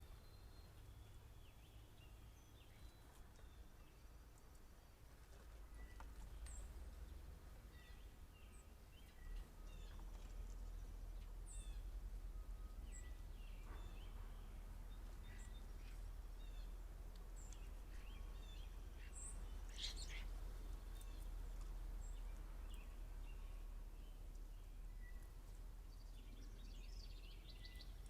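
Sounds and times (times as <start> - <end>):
low steady rumble: 0.0 - 28.0
birds chirping and whistling: 12.6 - 14.3.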